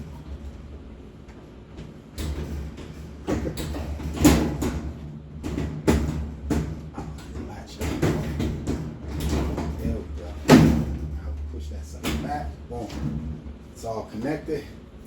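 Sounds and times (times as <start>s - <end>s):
washing machine panel knocks and clunks: 2.2s - 11.1s.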